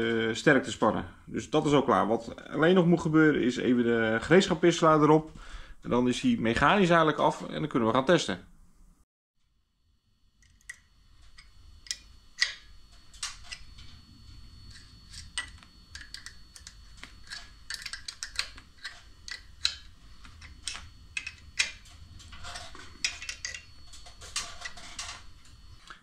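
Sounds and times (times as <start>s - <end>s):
metal parts and tools clicking: 14.7s - 25.3s.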